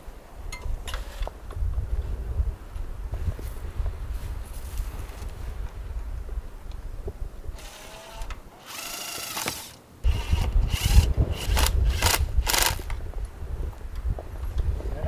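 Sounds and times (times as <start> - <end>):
wind buffeting microphone: 0.2 - 9.4, 10.0 - 15.0
cordless drill driving screws: 7.6 - 13.0.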